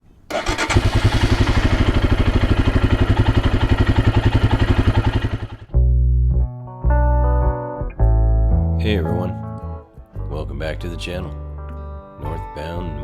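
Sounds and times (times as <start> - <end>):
motorcycle engine idling: 0.3 - 5.7
music with bass and guitar: 5.6 - 13.0.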